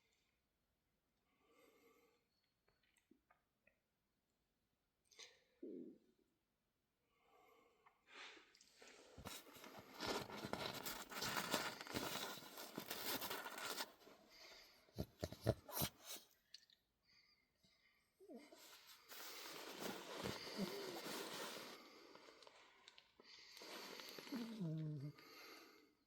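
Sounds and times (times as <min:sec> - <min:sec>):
rustling handling noise: 0:09.2 - 0:16.2, 0:18.6 - 0:22.7.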